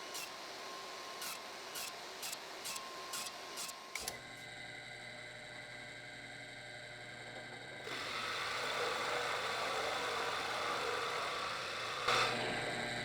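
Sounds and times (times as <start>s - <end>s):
electric power tool motor humming: 7.8s - 13.0s.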